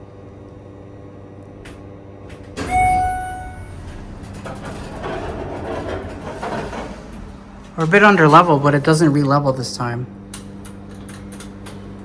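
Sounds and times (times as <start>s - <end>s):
elevator hum: 1.0s - 12.0s
elevator doors opening: 1.4s - 12.0s
elevator arrival chime ding: 2.5s - 5.9s.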